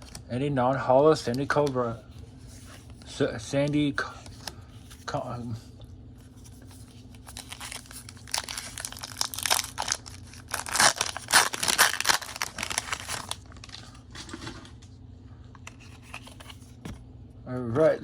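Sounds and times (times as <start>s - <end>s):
cards being handled: 6.2s - 14.4s, 15.6s - 17.0s
foil wrapper tearing and crinkling: 7.0s - 14.4s.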